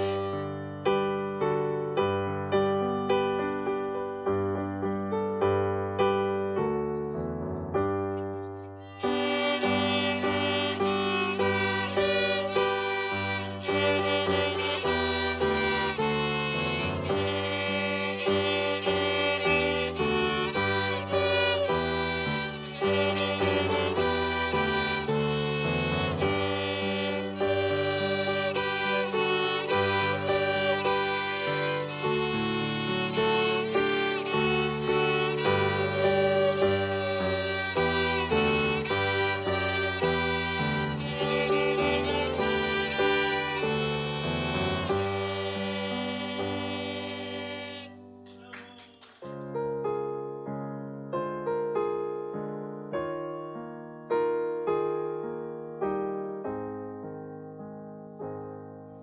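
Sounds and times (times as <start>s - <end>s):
bowed strings melody: 0.0s - 48.5s
keyboard accompaniment: 0.0s - 59.0s.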